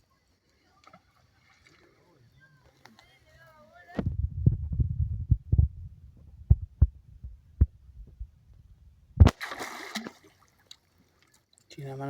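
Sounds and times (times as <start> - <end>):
dull low thumps and knocks: 4.0 - 9.4.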